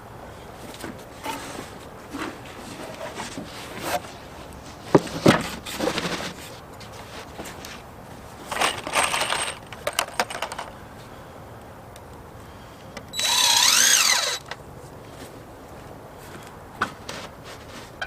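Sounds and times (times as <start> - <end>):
equipment rustling: 0.8 - 10.7.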